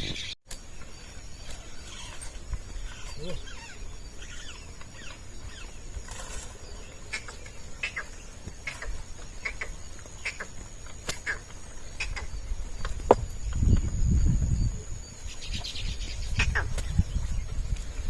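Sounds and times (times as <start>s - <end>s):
bird chirps: 0.0s - 17.7s
high insect drone: 0.6s - 18.0s
sharp click: 11.0s - 11.3s.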